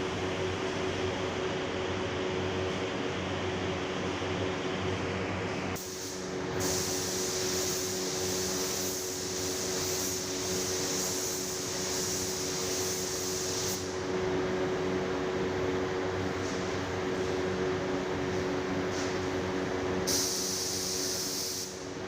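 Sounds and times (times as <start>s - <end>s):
spray gun hissing: 5.8s - 13.9s, 20.1s - 21.8s.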